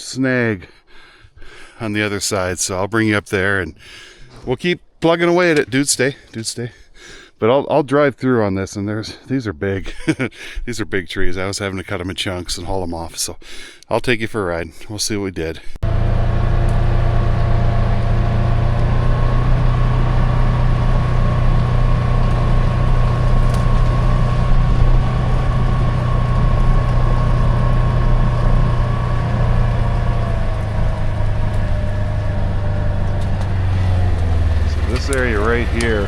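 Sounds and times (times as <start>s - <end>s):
vehicle engine droning: 15.8s - 36.0s.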